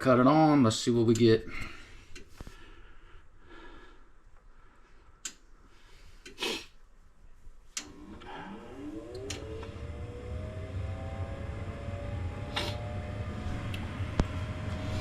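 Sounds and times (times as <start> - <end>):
furnace motor humming: 7.8 - 15.0.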